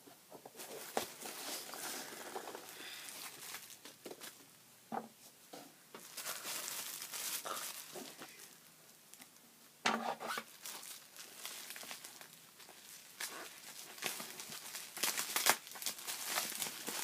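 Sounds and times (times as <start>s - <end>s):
packing material crinkling: 0.6s - 4.4s, 6.0s - 9.2s, 10.3s - 17.0s
sharp crackle: 10.5s - 17.0s.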